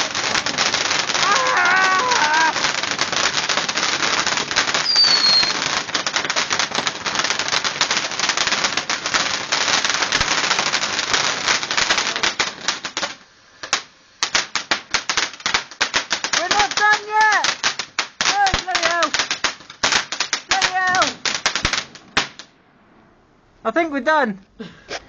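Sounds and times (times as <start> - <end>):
falling firework whistle: 0.0 - 3.4, 4.5 - 7.7
fireworks crackling: 0.0 - 25.0.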